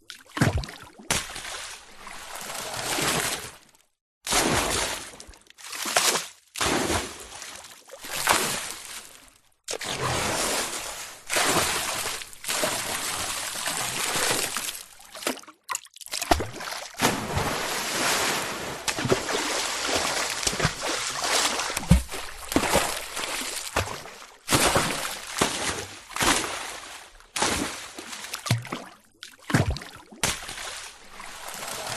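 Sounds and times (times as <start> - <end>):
water splashing and sloshing: 0.0 - 31.9.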